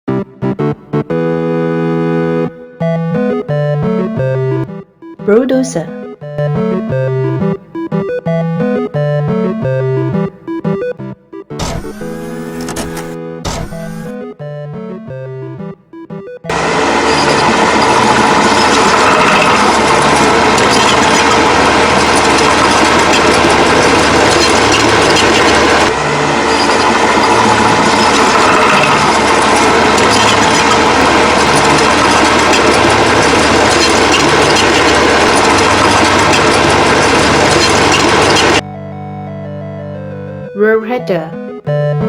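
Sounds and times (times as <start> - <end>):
bulldozer engine: 16.5 - 40.0
clattering tracks: 17.5 - 25.9.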